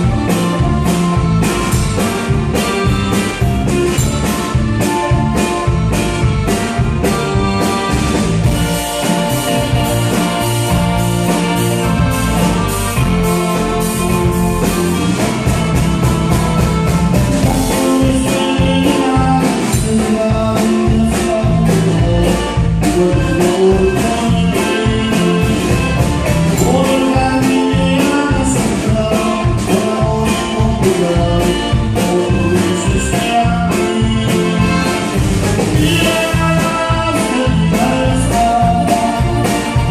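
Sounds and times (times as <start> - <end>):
live band playing: 0.0 - 39.9
steady drum beat: 0.0 - 39.9
person singing: 17.4 - 35.1, 35.7 - 39.9.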